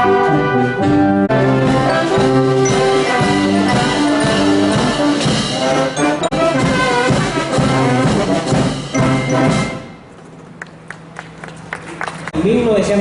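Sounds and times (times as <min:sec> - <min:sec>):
brass band playing held notes: 0:00.0 - 0:10.1.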